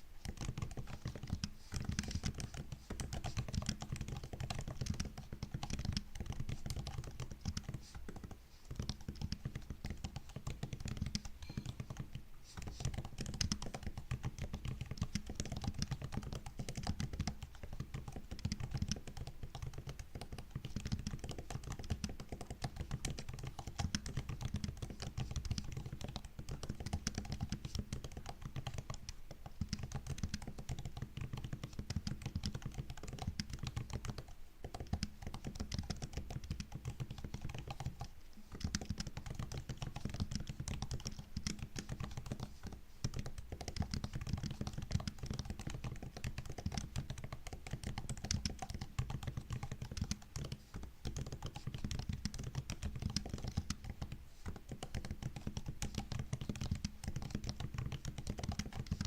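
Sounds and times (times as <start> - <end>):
fast typing on laptop keyboard: 0.0 - 59.0.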